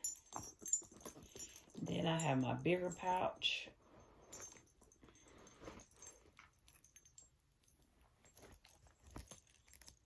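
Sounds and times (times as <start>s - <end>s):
faint clicks of small items: 4.2s - 10.0s.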